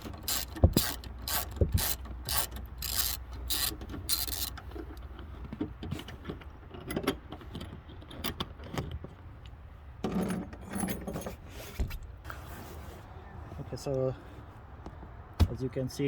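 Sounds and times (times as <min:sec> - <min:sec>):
ratchet clicks: 0:00.0 - 0:04.6
tools and bolts clinking: 0:00.0 - 0:05.6, 0:06.2 - 0:11.4.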